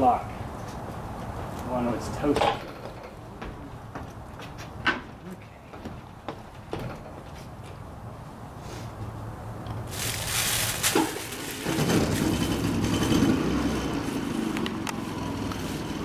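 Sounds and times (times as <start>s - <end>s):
engine running: 9.9s - 16.0s.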